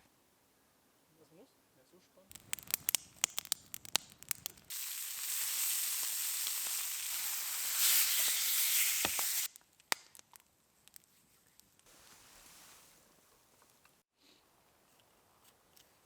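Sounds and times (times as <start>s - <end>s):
sharp clicks: 2.3s - 4.7s
food sizzling in a frying pan: 2.3s - 9.5s.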